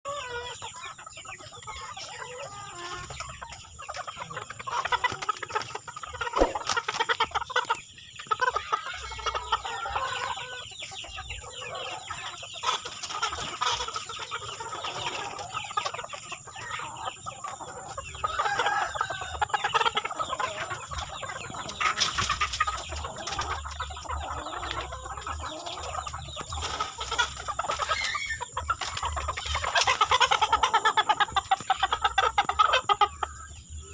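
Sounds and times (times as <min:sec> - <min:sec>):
chickens clucking: 0:00.1 - 0:33.9
rooster crowing: 0:18.3 - 0:19.5.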